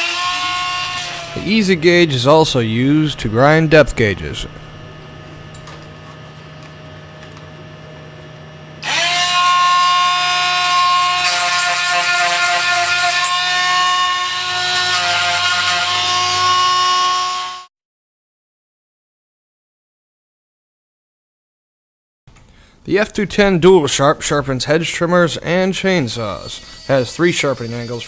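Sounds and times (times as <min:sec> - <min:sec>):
chain grinder whining: 0:00.0 - 0:06.2, 0:08.8 - 0:17.7, 0:26.0 - 0:28.0
faint motor hum: 0:00.0 - 0:17.6, 0:22.3 - 0:28.0.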